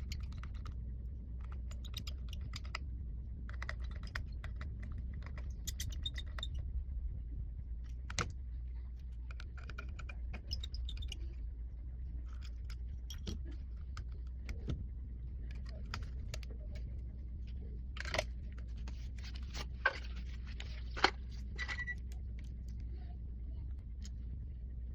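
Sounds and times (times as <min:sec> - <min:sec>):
small tools clicking and scraping: 0:00.0 - 0:00.8, 0:12.2 - 0:14.7
steady low hum: 0:00.0 - 0:24.9.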